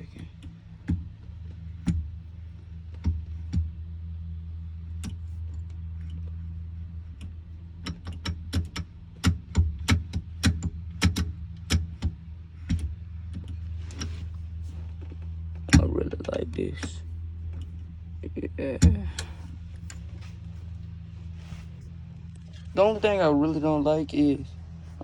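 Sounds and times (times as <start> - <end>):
gear shifter clicks and clunks: 0.0 - 4.0, 4.8 - 24.2
steady low hum: 0.0 - 25.0.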